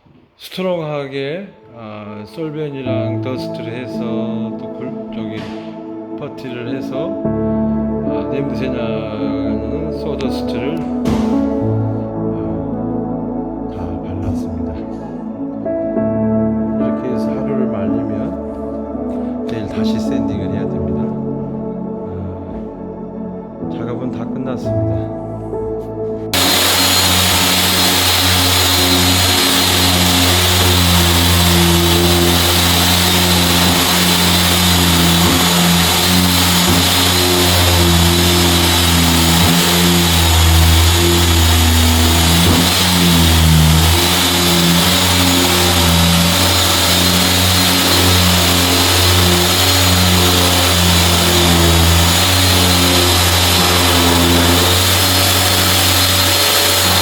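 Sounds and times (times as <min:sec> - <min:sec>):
floor sanding machine running: 0:26.3 - 0:57.0.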